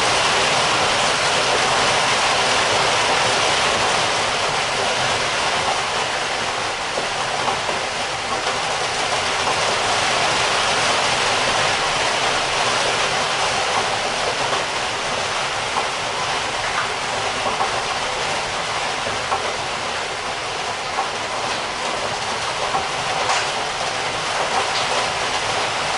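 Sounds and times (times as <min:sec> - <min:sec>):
heavy rain hissing: 0:00.0 - 0:25.9
raindrop ticks: 0:21.0 - 0:25.1.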